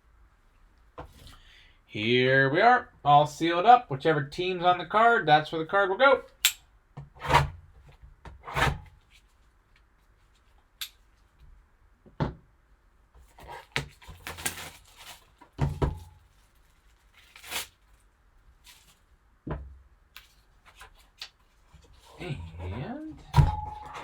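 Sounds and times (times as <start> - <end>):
packaging rustling and tearing: 13.3 - 19.1.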